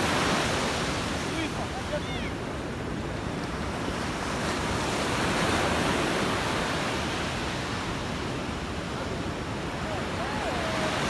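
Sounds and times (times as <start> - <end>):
waves washing on shore: 0.0 - 11.0.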